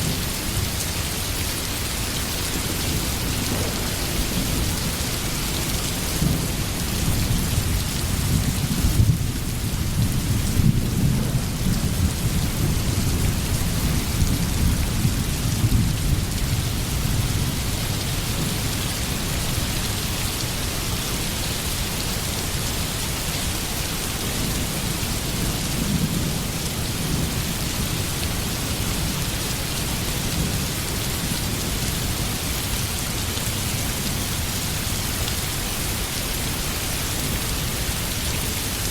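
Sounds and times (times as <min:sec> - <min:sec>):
heavy rain hissing: 0:00.0 - 0:38.9
low rolling thunder: 0:02.5 - 0:18.8.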